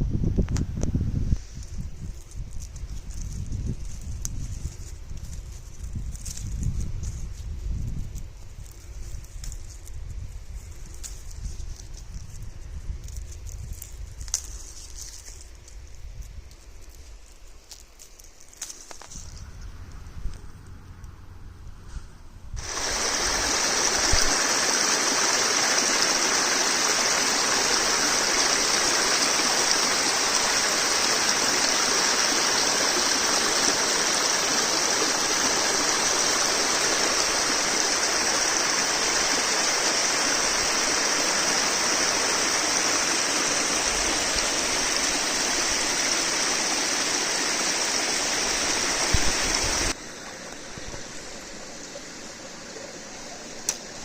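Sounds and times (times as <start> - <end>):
stream water flowing: 22.6 - 54.0.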